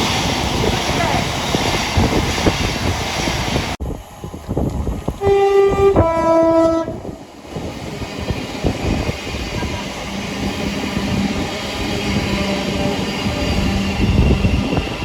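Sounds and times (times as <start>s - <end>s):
train rumble: 0.0s - 15.0s
two-tone train horn: 5.2s - 7.2s.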